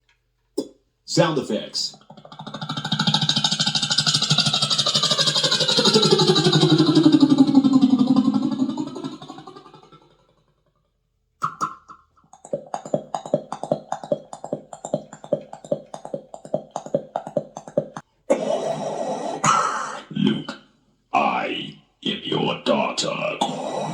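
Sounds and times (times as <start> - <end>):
beatboxer mouth clicks and pops: 1.9 - 9.9, 11.4 - 18.1
beatboxer buzzing hum: 2.0 - 9.9, 12.4 - 18.0
brief vocal tone: 22.8 - 23.9.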